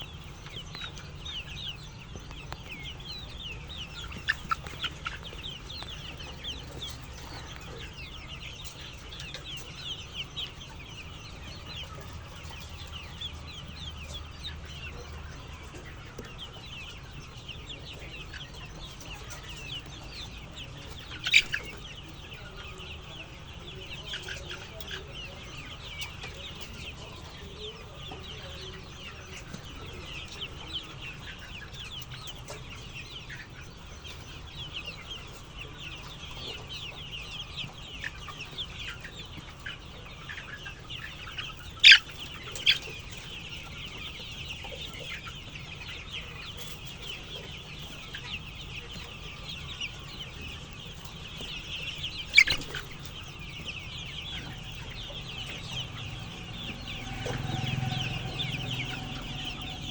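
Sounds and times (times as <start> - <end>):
chickens calling: 0.0 - 59.9
steady low hum: 52.2 - 59.9.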